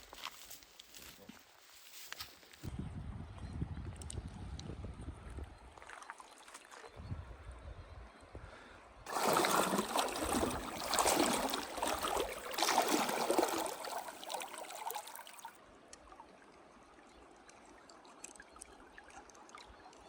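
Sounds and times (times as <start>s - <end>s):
river water rushing: 9.1s - 15.5s.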